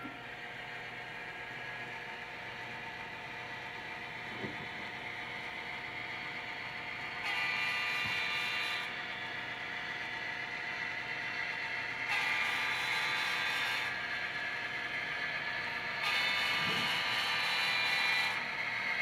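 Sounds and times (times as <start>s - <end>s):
model train motor whirring: 0.0s - 19.0s
electronic locomotive sound: 4.9s - 19.0s.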